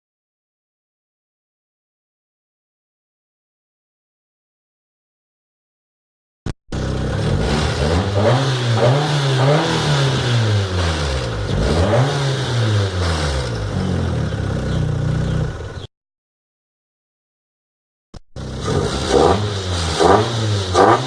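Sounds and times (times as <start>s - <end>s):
car engine revving: 6.7s - 15.9s, 18.4s - 21.0s.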